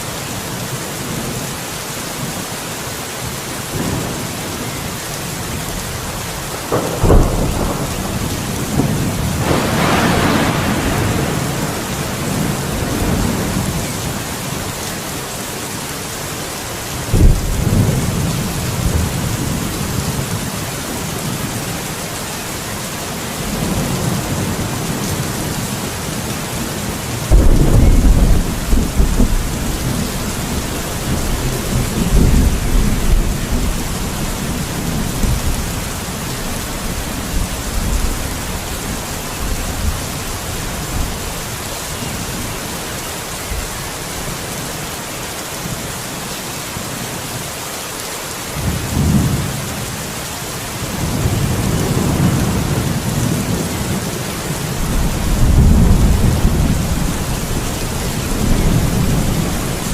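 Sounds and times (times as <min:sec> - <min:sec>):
steady rain: 0:00.0 - 0:59.9
thunder claps and rumbling: 0:03.7 - 0:15.0, 0:16.9 - 0:21.9, 0:23.3 - 0:42.5, 0:48.6 - 0:50.0, 0:50.8 - 0:59.9.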